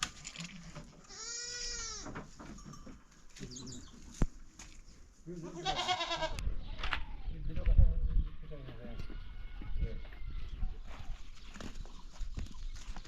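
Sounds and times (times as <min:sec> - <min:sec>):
sheep bleating: 0:05.6 - 0:06.4.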